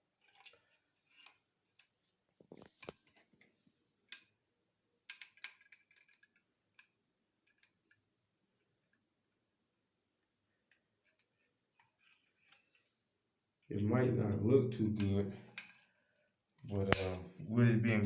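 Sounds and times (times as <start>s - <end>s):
faint steady hiss: 0.0s - 18.0s
small tools clicking and knocking: 0.2s - 3.3s, 5.0s - 8.0s, 15.5s - 17.2s.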